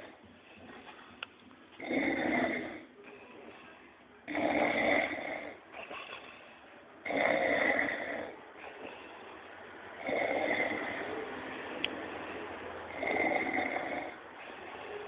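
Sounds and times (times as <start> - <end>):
quiet breathing: 0.0 - 15.0
man snoring: 1.8 - 2.9, 4.3 - 5.6, 7.0 - 8.4, 10.0 - 11.2, 12.9 - 14.2.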